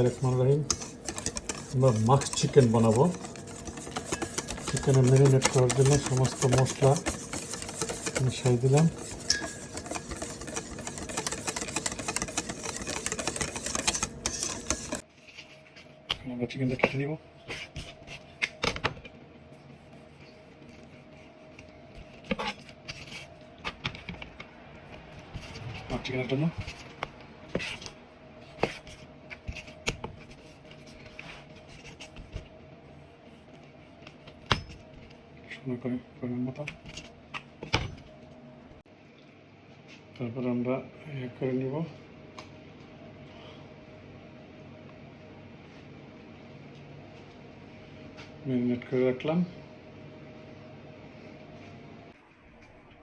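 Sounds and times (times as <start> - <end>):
utensil clattering against bowl: 0.0 - 15.0.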